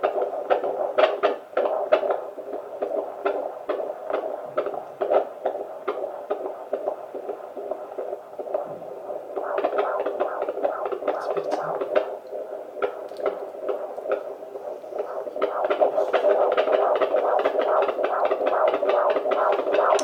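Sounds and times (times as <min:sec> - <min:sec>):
fetal heartbeat pulsing whoosh: 0:00.0 - 0:20.0
steady hum: 0:00.0 - 0:20.0.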